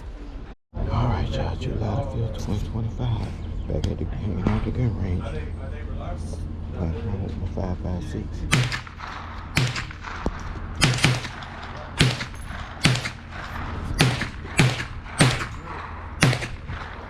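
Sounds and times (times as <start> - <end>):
rifle shots: 8.5 - 17.0.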